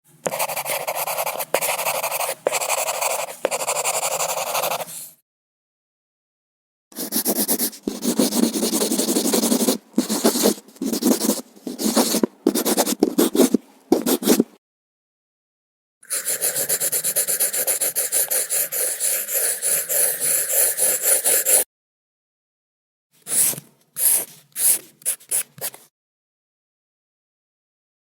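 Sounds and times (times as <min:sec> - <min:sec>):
pencil scribbling on paper: 0:00.2 - 0:05.0, 0:07.0 - 0:14.5, 0:16.1 - 0:21.6, 0:23.3 - 0:25.8.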